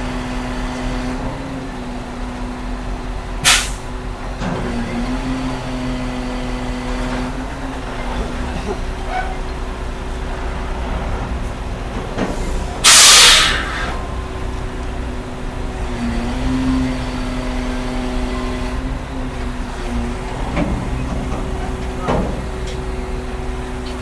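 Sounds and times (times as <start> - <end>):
diesel engine running: 0.0 - 24.0
compressed air hiss: 3.4 - 3.8, 12.5 - 14.0.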